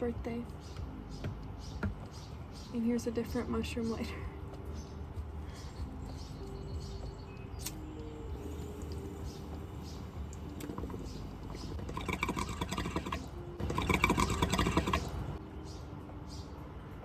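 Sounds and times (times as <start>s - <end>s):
water bong bubbling: 11.8s - 15.3s.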